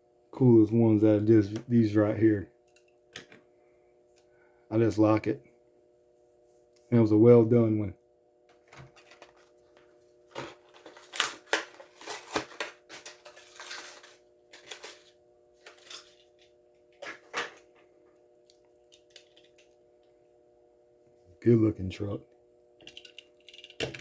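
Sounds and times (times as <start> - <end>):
plastic packaging crinkling: 10.3 - 15.1.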